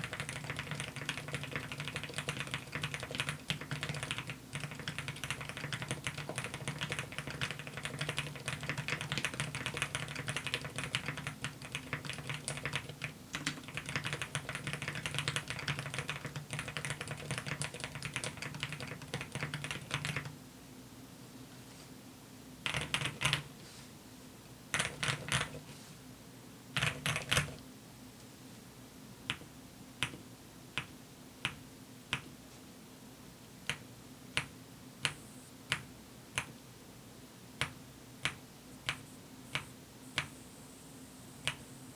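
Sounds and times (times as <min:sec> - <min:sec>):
mechanical keyboard typing: 0:00.0 - 0:20.3, 0:22.7 - 0:23.4, 0:24.8 - 0:25.6, 0:26.8 - 0:27.6.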